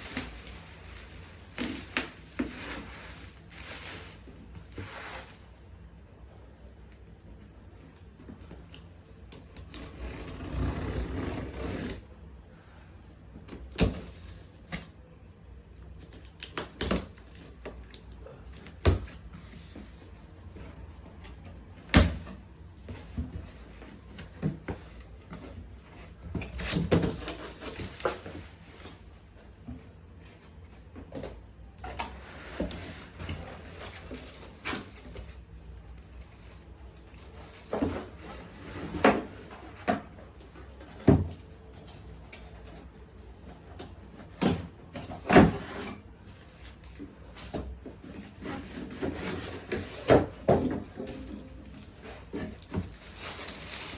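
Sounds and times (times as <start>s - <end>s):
packaging rustling: 0.0s - 5.5s, 51.0s - 53.9s.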